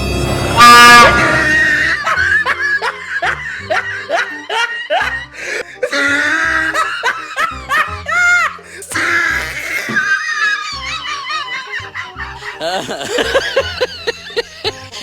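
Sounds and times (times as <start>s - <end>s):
loud train horn blast: 0.0s - 2.0s
background music: 0.0s - 15.0s
rapid laughter: 0.9s - 15.0s.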